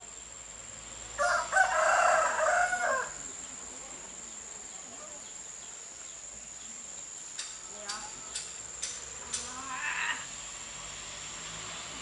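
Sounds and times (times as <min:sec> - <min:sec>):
high insect hum: 0:00.0 - 0:12.0
rooster crowing: 0:01.2 - 0:03.3.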